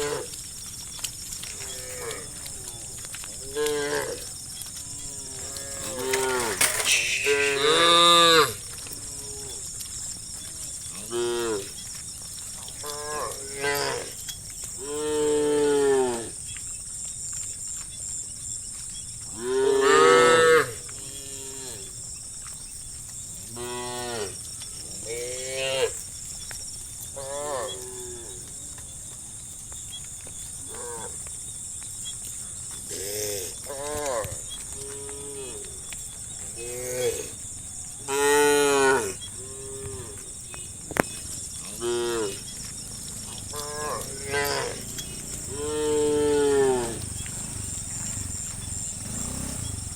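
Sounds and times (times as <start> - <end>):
cattle mooing: 1.6 - 2.8, 4.9 - 9.6, 38.1 - 40.3, 43.2 - 49.9
high-pitched insect-like buzz: 5.0 - 8.7.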